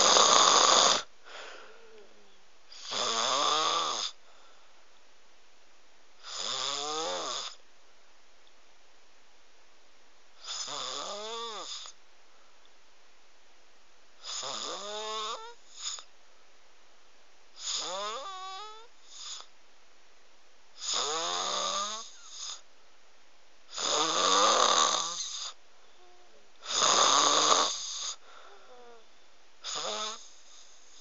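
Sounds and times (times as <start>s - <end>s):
snoring with pitched tone: 0.0s - 1.1s, 2.7s - 4.2s, 6.2s - 7.6s, 10.4s - 12.0s, 14.2s - 16.1s, 17.6s - 19.5s, 20.8s - 22.6s, 23.7s - 25.6s, 26.6s - 29.0s, 29.6s - 31.0s.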